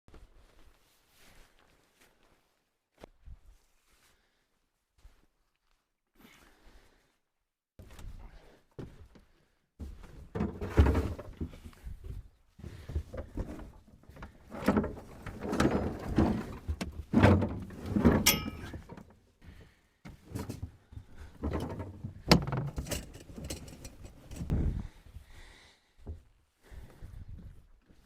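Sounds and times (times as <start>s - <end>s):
camping gear thuds and knocks: 9.9s - 19.2s, 20.1s - 24.5s.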